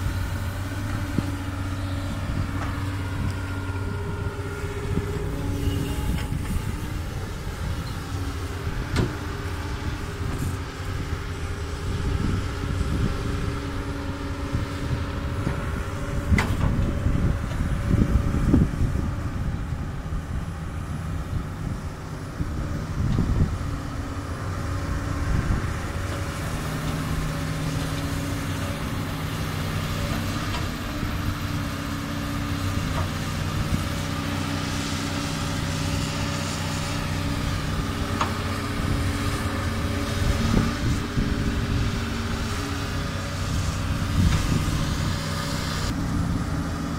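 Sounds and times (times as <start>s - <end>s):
excavator diesel engine running: 0.0s - 46.9s.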